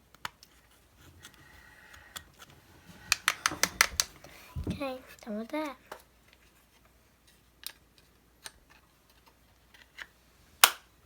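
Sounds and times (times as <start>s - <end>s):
small objects clicking on table: 3.1s - 4.1s.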